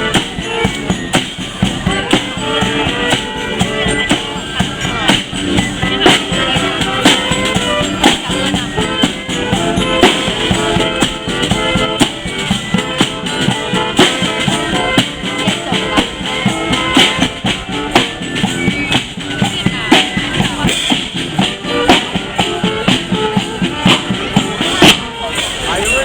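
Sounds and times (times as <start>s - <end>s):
drum kit beat: 0.0s - 25.7s
held pitched instrument notes: 0.0s - 26.0s.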